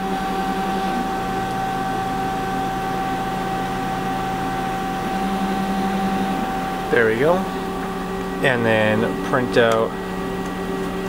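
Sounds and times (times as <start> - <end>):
laser cutter fans humming: 0.0 - 11.0.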